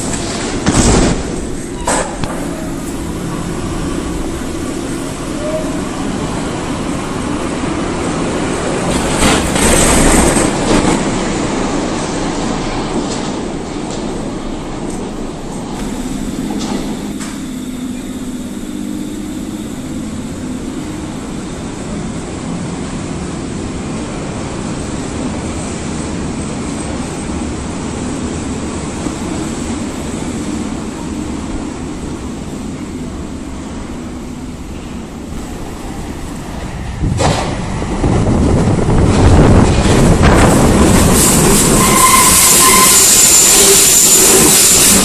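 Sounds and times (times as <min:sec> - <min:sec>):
train running on track: 0:00.0 - 0:45.0
high-pitched wheel squeal: 0:41.7 - 0:45.0.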